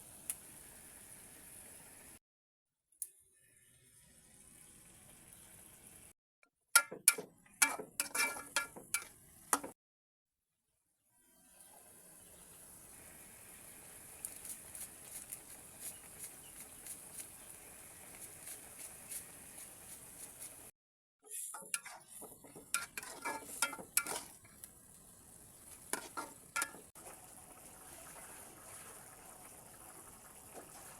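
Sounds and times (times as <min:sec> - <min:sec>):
utensil scraping a pan: 0:06.8 - 0:09.7, 0:21.3 - 0:24.5, 0:25.8 - 0:26.9
food sizzling in a frying pan: 0:21.7 - 0:30.9.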